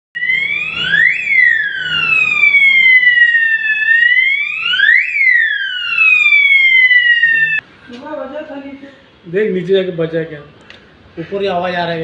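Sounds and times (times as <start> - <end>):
electronic fire alarm siren wailing: 0.2 - 7.6.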